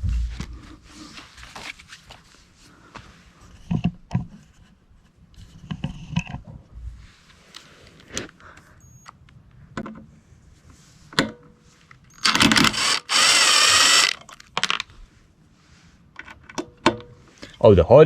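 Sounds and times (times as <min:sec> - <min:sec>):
cordless drill whining: 0:12.2 - 0:14.3.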